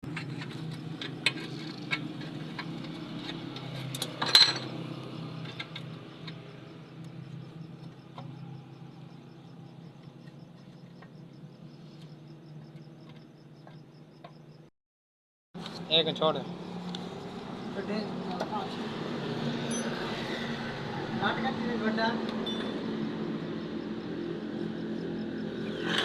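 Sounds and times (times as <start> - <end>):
metal tools clinking: 3.6 - 4.7, 19.7 - 20.0.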